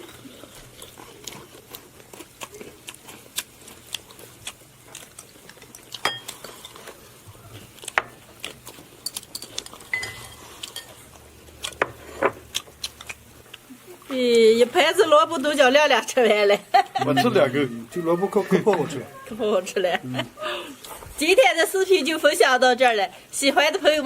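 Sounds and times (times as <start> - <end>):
tableware clinking: 6.0 - 6.8, 9.0 - 11.0.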